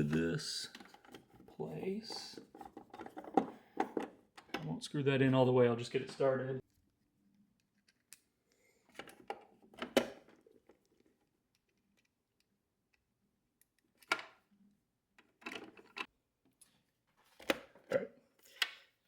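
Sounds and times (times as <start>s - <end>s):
plastic parts and screws rattling: 0.6s - 4.7s, 15.2s - 16.1s.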